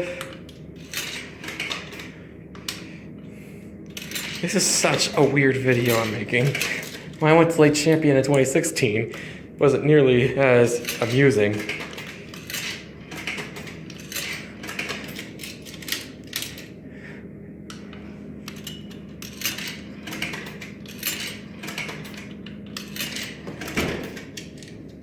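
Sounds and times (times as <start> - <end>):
coins clinking through coin mechanism: 0.0 - 2.8, 3.9 - 7.3, 10.8 - 16.8, 18.4 - 24.8
steady low hum: 0.0 - 25.0.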